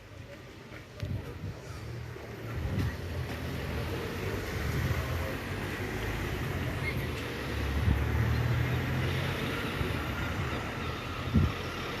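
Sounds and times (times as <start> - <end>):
vehicle engine rumble: 0.0 - 12.0.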